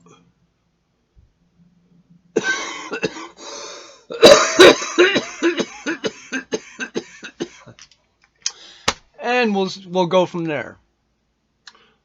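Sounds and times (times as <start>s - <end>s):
man coughing: 2.4s - 3.4s, 4.1s - 7.8s.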